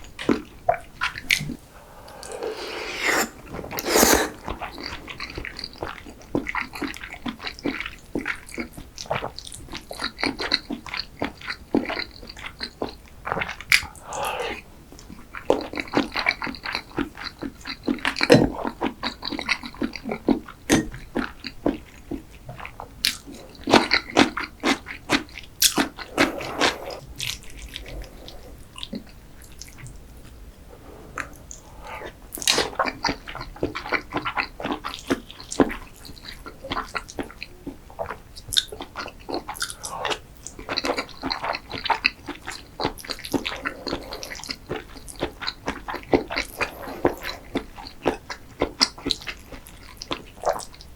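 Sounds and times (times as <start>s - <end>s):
wet mouth clicks: 1.8s - 4.4s, 25.6s - 27.0s.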